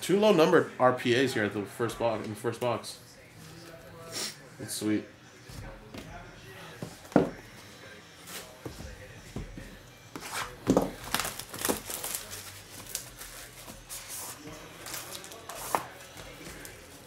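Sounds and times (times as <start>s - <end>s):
plastic wrapper crinkling and tearing: 11.0s - 16.0s.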